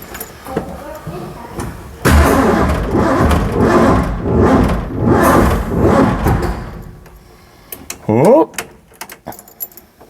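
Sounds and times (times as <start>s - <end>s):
car engine running unevenly: 2.1s - 7.4s.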